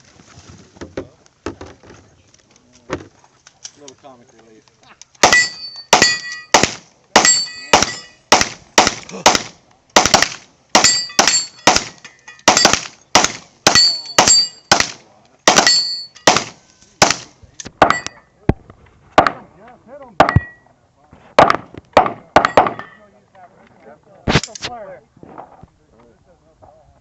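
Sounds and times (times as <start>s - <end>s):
steel plate ringing clang: 5.2s - 6.6s, 7.2s - 8.3s, 10.8s - 12.8s, 13.7s - 14.7s, 15.6s - 16.4s, 17.8s - 18.3s
rapid pistol fire: 5.2s - 17.3s.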